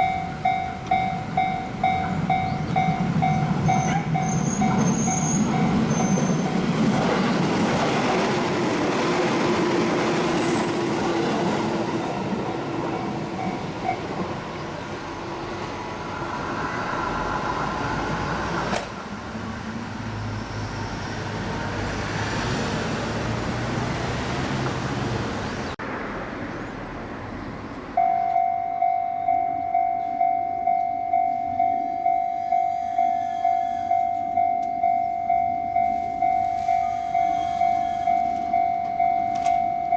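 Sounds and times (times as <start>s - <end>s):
level crossing warning bell: 0.0s - 6.8s, 12.6s - 14.2s, 28.0s - 39.9s
train passing: 0.0s - 39.9s.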